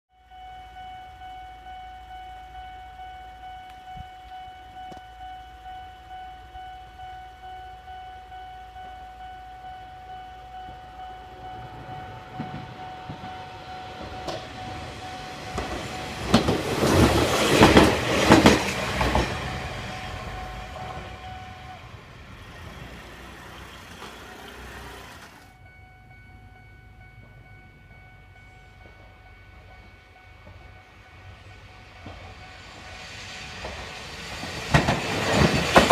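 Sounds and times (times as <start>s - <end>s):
railroad crossing bell clanging: 0.1s - 35.9s
train wheels clattering: 11.4s - 21.8s, 28.8s - 35.9s.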